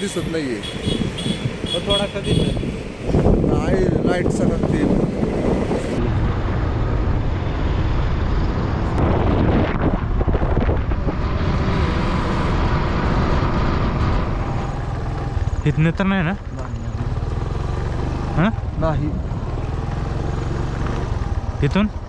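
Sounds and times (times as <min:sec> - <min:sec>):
vehicle engine and road rumble: 0:00.0 - 0:22.0
wind noise on microphone: 0:00.7 - 0:14.7.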